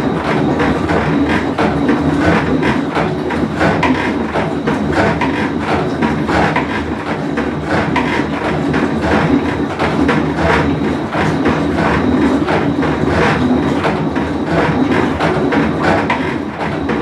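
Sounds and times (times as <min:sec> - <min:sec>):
washing machine rumbling: 0:00.0 - 0:17.0.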